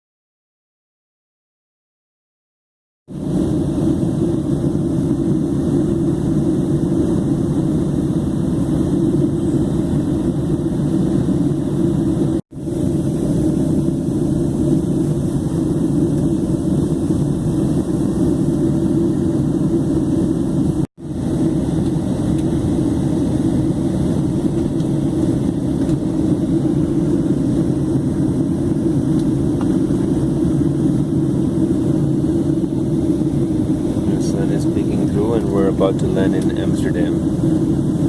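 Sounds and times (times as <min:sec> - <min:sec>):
airliner cabin jet engine noise: 0:03.1 - 0:38.0.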